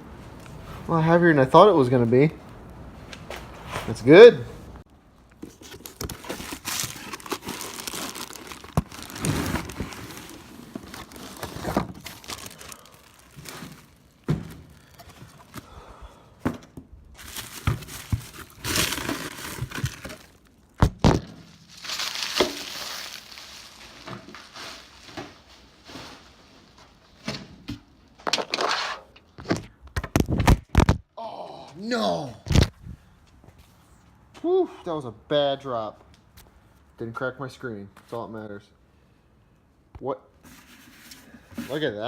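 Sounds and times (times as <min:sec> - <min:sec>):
packaging tearing and crinkling: 0:05.5 - 0:14.2, 0:17.2 - 0:24.9.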